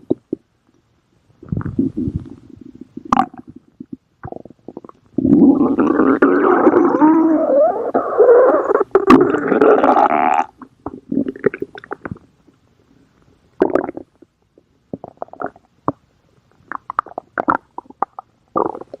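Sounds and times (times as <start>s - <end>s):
stomach growling and gurgling: 1.4s - 12.3s, 16.7s - 19.0s.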